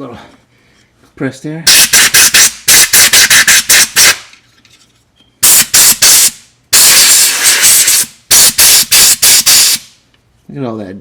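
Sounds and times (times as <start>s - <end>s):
aerosol spray hissing: 5.9s - 9.9s.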